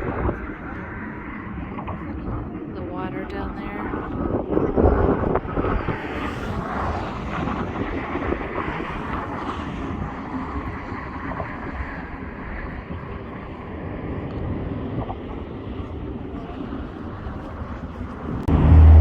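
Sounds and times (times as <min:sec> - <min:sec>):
wind buffeting microphone: 0:00.0 - 0:19.0
highway traffic rushing: 0:05.3 - 0:10.8, 0:18.3 - 0:19.0.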